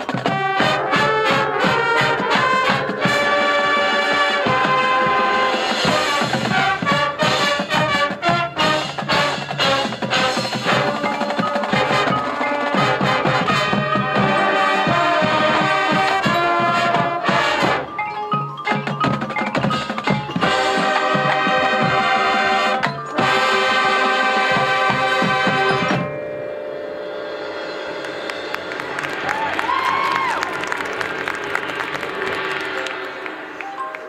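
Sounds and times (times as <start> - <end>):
marching band playing: 0.0 - 26.1, 27.2 - 34.0
drums: 0.0 - 26.2, 27.1 - 34.0
mallet percussion: 0.0 - 29.3, 32.6 - 34.0.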